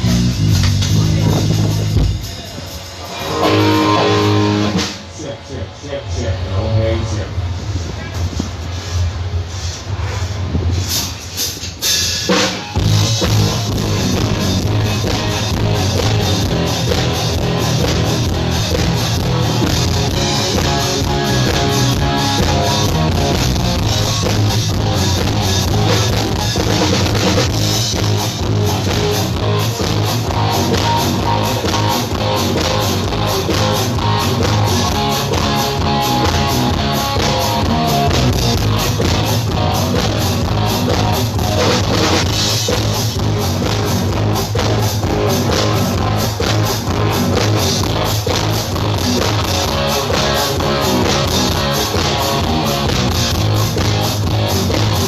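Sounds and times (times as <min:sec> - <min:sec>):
drums playing alone: 0:00.0 - 0:05.2, 0:07.5 - 0:55.0
rock band playing: 0:00.0 - 0:05.5, 0:10.8 - 0:55.0.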